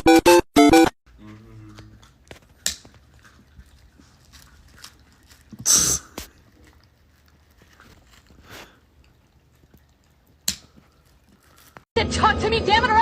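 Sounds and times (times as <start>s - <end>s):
loud hissy sneeze: 5.6s - 6.1s
sharp snort: 5.6s - 6.4s.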